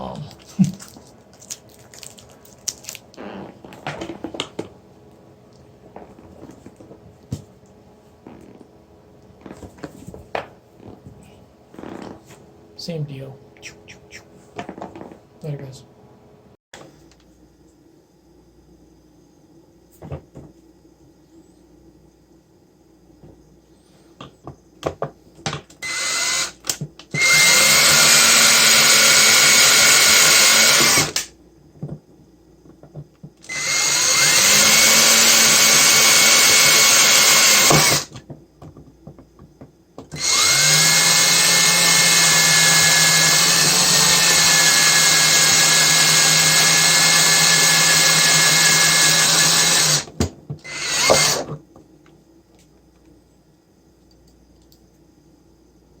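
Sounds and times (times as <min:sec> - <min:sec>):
power tool motor whirring: 0:25.8 - 0:31.3, 0:33.4 - 0:38.1, 0:40.2 - 0:51.6.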